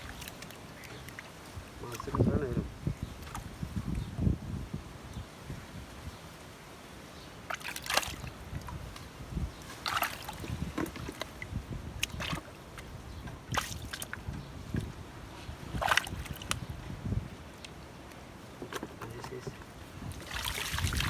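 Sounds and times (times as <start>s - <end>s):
water sloshing: 0.0s - 2.4s, 3.0s - 3.7s, 7.4s - 21.0s
water splashes: 0.0s - 3.7s, 7.4s - 15.0s, 15.6s - 16.8s, 17.6s - 21.0s.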